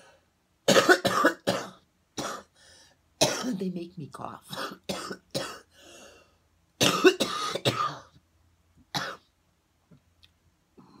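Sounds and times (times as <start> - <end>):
woman coughing: 0.7 - 2.5, 3.2 - 3.6, 4.5 - 5.7, 6.8 - 8.2, 9.0 - 9.2.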